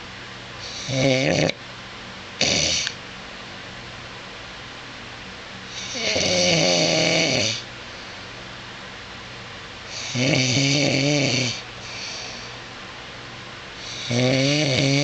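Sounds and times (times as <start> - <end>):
man snoring loudly: 0.7 - 1.6, 2.4 - 2.9, 5.8 - 7.7, 9.9 - 11.6, 13.8 - 15.0
quiet breathing: 11.6 - 12.7.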